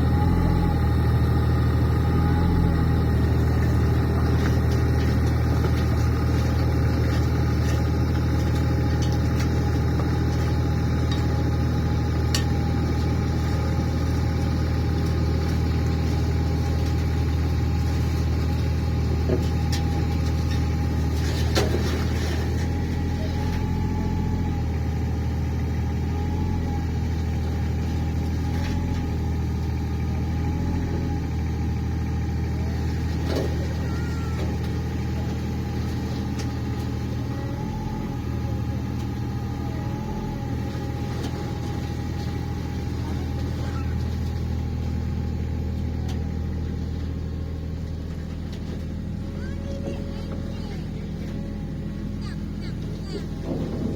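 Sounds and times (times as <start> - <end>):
excavator diesel engine running: 0.0 - 53.9.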